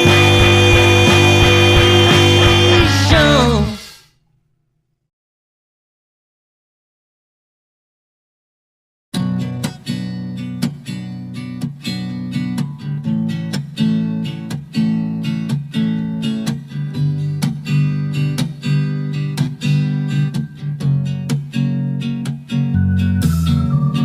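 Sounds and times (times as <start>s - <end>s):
strummed acoustic guitar: 0.0s - 3.8s, 9.2s - 24.0s.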